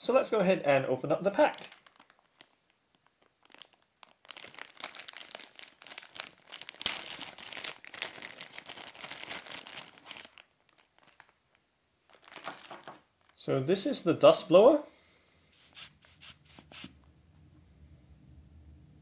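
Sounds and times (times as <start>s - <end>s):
packaging crinkling and rustling: 1.3s - 13.4s.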